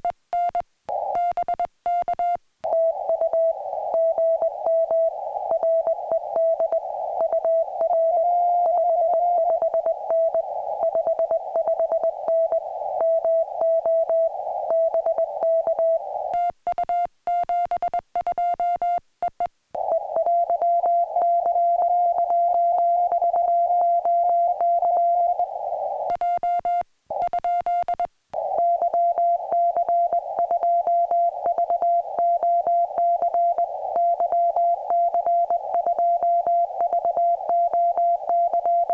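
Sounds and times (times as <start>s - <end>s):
receiver hiss: 0.0s - 38.9s
morse code tone: 1.2s - 19.5s, 26.1s - 38.9s.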